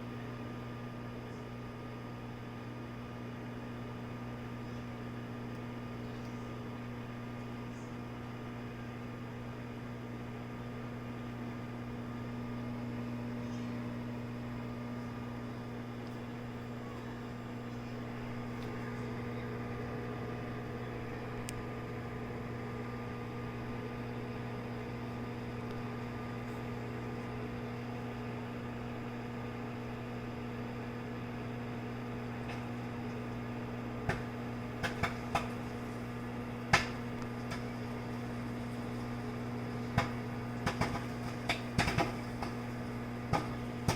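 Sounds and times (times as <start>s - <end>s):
microwave oven humming: 0.0s - 43.9s
popcorn kernels popping: 34.0s - 36.0s, 36.6s - 43.9s.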